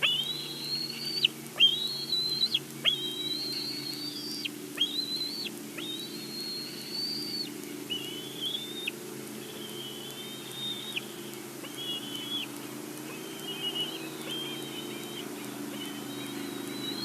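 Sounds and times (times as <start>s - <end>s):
eagle whistled calls: 0.0s - 17.0s
faint low steady hum: 0.0s - 17.0s.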